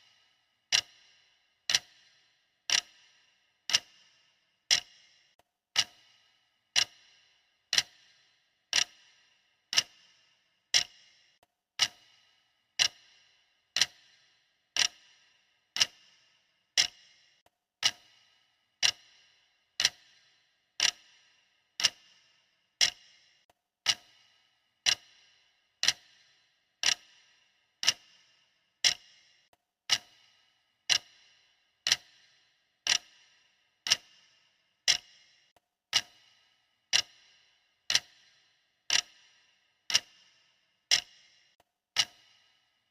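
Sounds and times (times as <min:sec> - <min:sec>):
clock ticking: 0:00.0 - 0:42.6.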